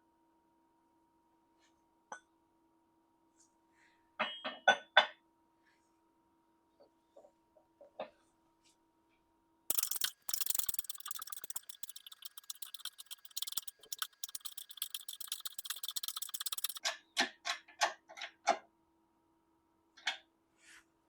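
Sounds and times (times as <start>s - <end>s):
mechanical clicking: 9.7s - 16.8s.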